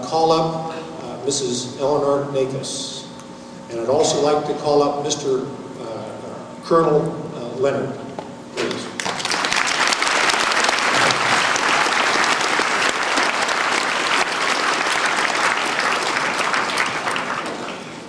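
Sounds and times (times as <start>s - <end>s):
audience applauding: 9.0s - 18.0s.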